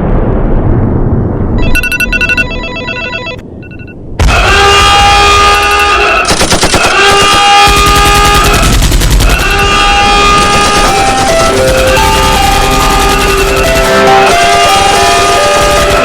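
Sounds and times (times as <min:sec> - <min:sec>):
explosion rumble: 0:00.0 - 0:02.4
loud blaring tone: 0:01.5 - 0:04.0
electronic ringing beeps: 0:01.6 - 0:04.0
rapid machine-gun fire: 0:05.4 - 0:16.0.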